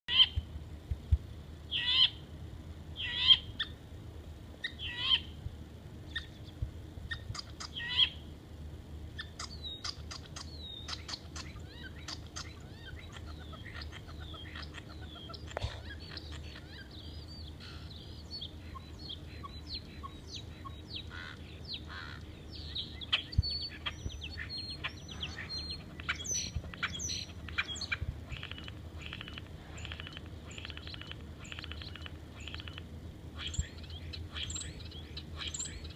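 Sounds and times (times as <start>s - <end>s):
starling harsh calls: 1.7s - 2.2s, 3.0s - 3.8s, 4.6s - 5.4s, 9.2s - 35.9s.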